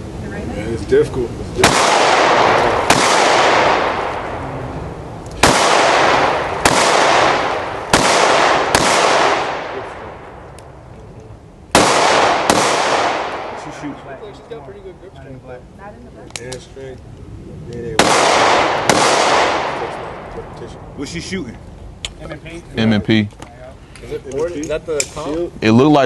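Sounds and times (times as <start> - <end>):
gunshots with long echo: 1.6 - 4.7, 5.4 - 10.5, 11.7 - 14.4, 18.0 - 20.6.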